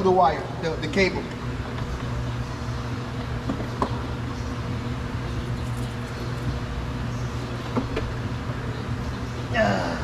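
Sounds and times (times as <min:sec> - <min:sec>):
low background hum: 0:00.0 - 0:10.0.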